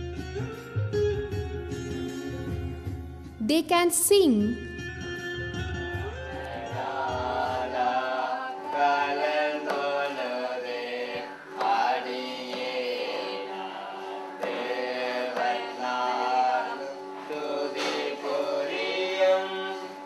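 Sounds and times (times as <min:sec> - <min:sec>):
children singing: 0:06.3 - 0:20.0.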